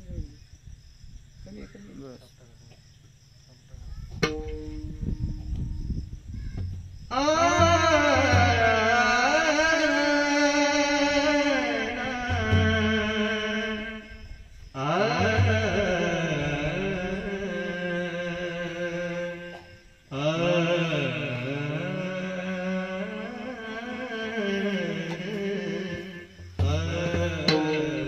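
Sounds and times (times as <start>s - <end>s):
person singing devotional song: 7.1s - 28.0s.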